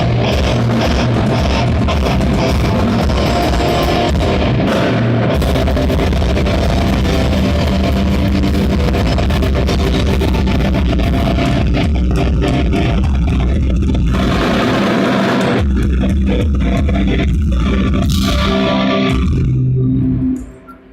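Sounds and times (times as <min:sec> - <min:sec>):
live rock band playing: 0:00.0 - 0:20.6.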